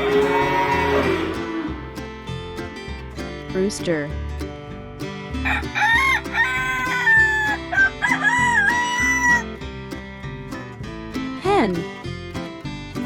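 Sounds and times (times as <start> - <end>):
acoustic guitar music: 0.0 - 13.0
rooster crowing: 5.4 - 9.5.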